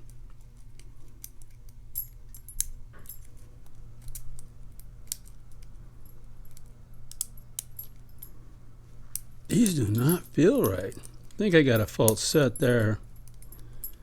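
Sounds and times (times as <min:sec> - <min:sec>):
lock pick metallic clicks: 0:06.4 - 0:08.2
steady low hum: 0:08.2 - 0:14.0.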